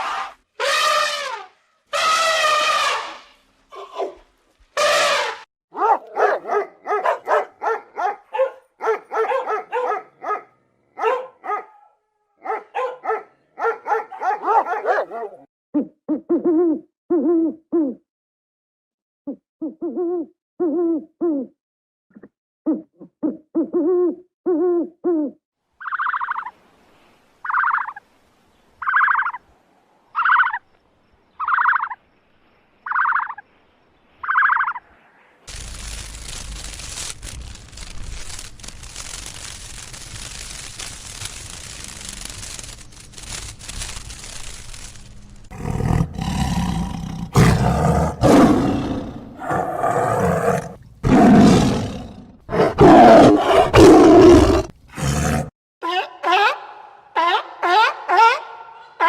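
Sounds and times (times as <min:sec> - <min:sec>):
animal rattling calls: 0:35.5 - 0:55.4
large animal roaring: 0:45.5 - 0:55.5.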